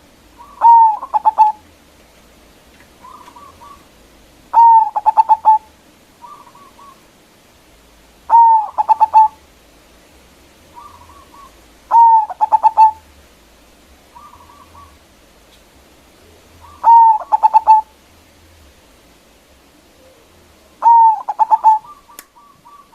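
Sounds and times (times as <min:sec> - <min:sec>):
dove cooing: 0:00.0 - 0:01.8, 0:02.9 - 0:07.1, 0:08.3 - 0:09.4, 0:10.7 - 0:13.1, 0:14.1 - 0:15.1, 0:16.2 - 0:18.0, 0:19.9 - 0:22.9.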